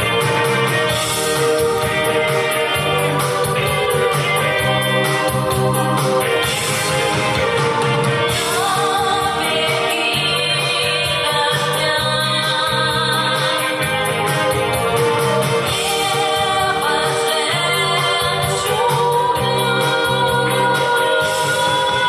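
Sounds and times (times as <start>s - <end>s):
song with sung vocals and beat: 0.0s - 22.0s.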